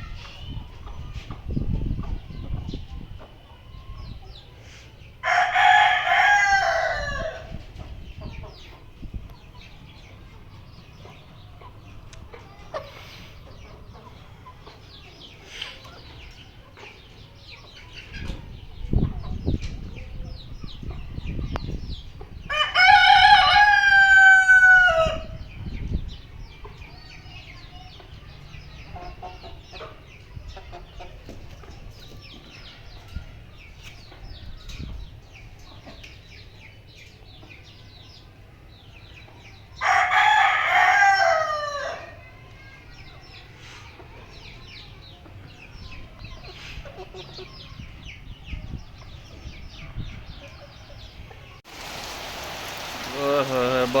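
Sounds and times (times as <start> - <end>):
rooster crowing: 5.2 - 7.5, 22.5 - 25.3, 39.8 - 42.2
heavy rain pattering: 51.6 - 54.0.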